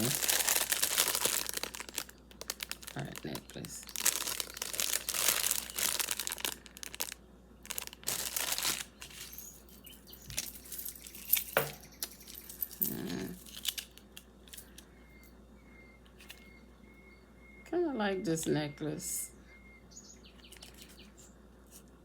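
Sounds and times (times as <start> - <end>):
plastic packaging crinkling: 0.0 - 14.2.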